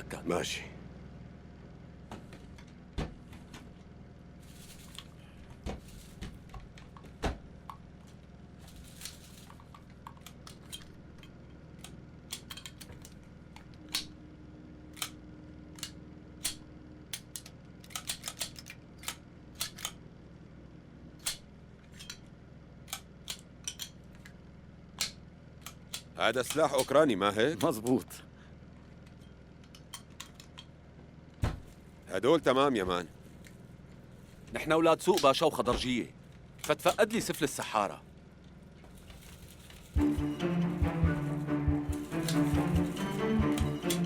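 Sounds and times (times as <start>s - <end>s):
steady low hum: 0.0s - 44.0s
crates being handled: 2.0s - 14.2s, 31.4s - 32.1s.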